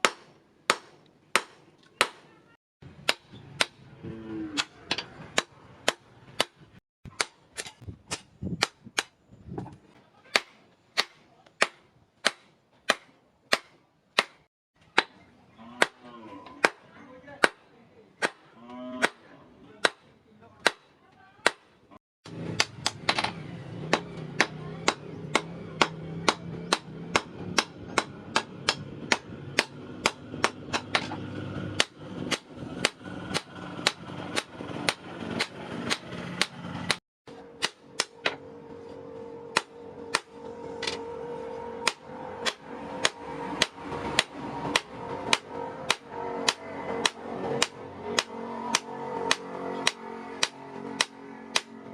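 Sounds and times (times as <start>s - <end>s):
hammer striking iron: 0.0s - 2.3s, 3.0s - 3.8s, 4.6s - 9.1s, 10.3s - 15.2s, 18.2s - 19.2s, 22.5s - 31.2s, 31.8s - 37.0s, 37.6s - 38.4s, 39.5s - 41.0s, 41.8s - 51.8s.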